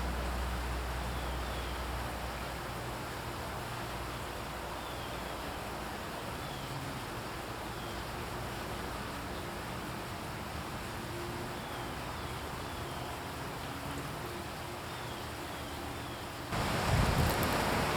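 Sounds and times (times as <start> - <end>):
steady hiss: 15.9 - 17.9.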